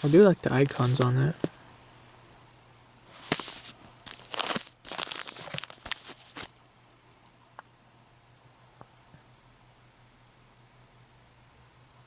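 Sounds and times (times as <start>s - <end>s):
wrapper crinkling: 0.0s - 1.5s, 3.1s - 6.6s.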